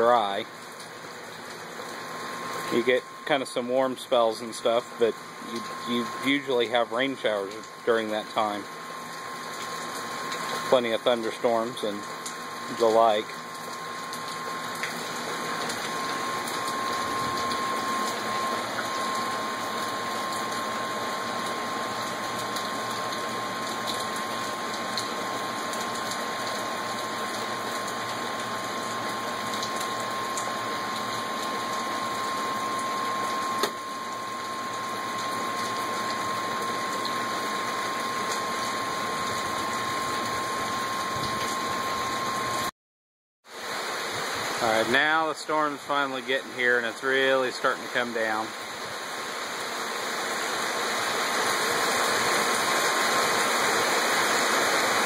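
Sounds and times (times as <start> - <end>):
steady rain: 0.0 - 42.7, 43.5 - 55.0
thin steady tone: 2.2 - 27.4, 44.6 - 48.9.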